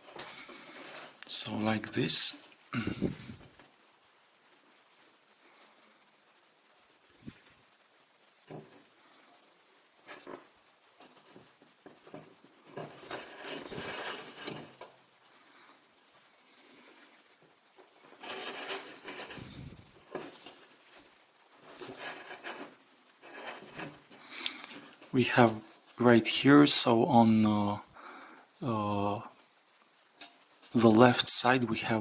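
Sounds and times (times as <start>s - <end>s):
metal lantern rubbing and scraping: 0.0s - 1.2s, 10.0s - 15.0s, 17.8s - 25.2s.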